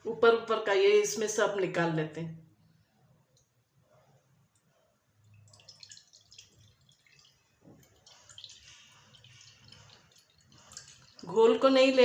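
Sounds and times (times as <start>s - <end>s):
liquid trickling into pot: 4.6s - 12.0s.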